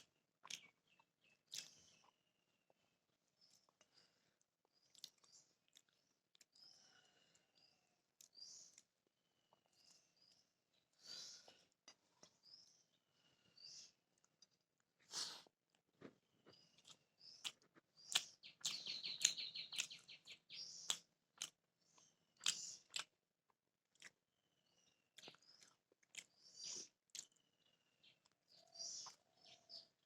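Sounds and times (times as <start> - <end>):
chewing and lip-smacking: 0.0 - 2.2, 4.6 - 6.7, 16.5 - 24.2, 25.1 - 27.5
faint bird chirps: 0.0 - 14.6, 16.1 - 23.1, 24.0 - 30.0.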